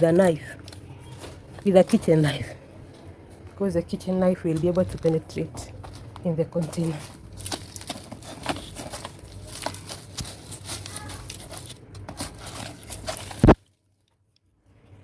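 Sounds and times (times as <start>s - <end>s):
knife scraping into dry soil: 7.9s - 13.6s.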